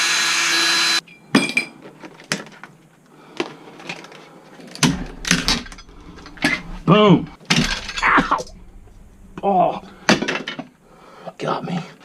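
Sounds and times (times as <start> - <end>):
power tool running: 0.0 - 1.0
clinks and knocks of tools: 1.1 - 2.7, 3.8 - 6.8.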